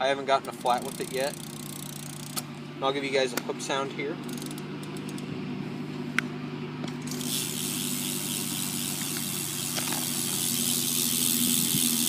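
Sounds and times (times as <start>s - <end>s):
bicycle hub freewheel ticking: 0.4s - 2.4s, 4.2s - 5.2s, 7.1s - 12.0s.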